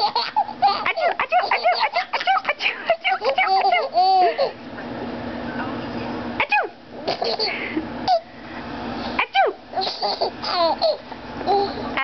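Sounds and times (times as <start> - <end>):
baby laughing and squealing: 0.0 - 4.6, 9.8 - 11.9.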